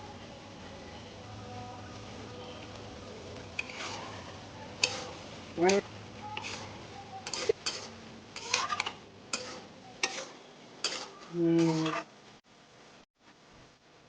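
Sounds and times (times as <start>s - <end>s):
metal spoon scraping a pot: 3.5s - 4.2s, 4.8s - 12.1s.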